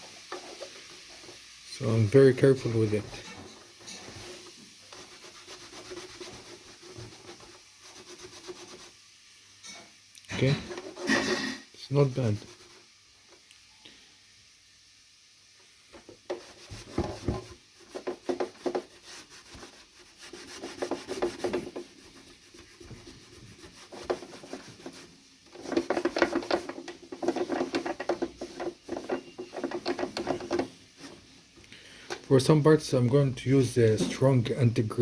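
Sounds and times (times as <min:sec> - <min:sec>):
brush scrubbing plastic casing: 0:00.0 - 0:09.0, 0:10.4 - 0:13.0, 0:16.1 - 0:31.3.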